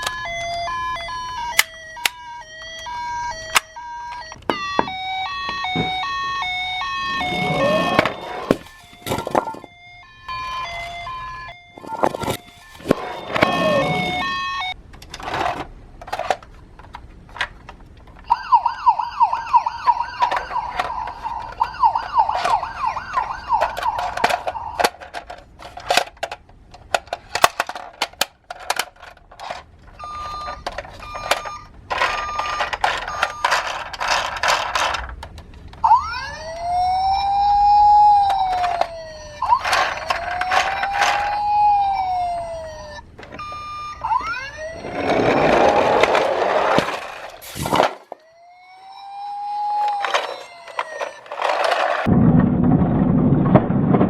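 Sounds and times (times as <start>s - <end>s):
toy electronic sirens: 0.0s - 14.8s, 18.2s - 26.1s, 27.2s - 35.1s, 35.8s - 52.1s
plastic clicks and clatters: 14.9s - 18.4s, 20.1s - 35.8s, 38.2s - 41.4s, 49.8s - 52.1s.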